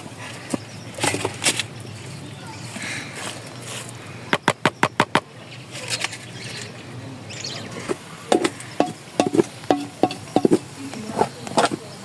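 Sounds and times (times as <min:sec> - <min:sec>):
sharp knocks: 0:08.3 - 0:10.6.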